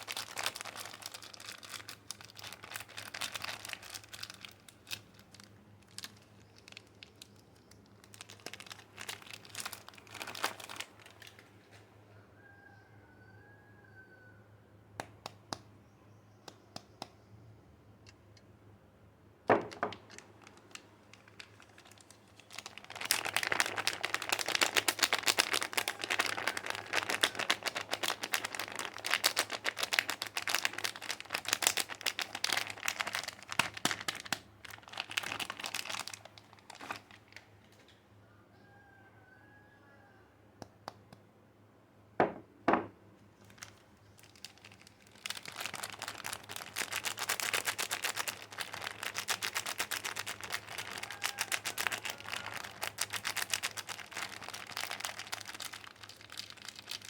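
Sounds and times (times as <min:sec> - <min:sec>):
wrapper crinkling and rustling: 0:00.0 - 0:11.8, 0:19.5 - 0:37.8, 0:43.4 - 0:57.0.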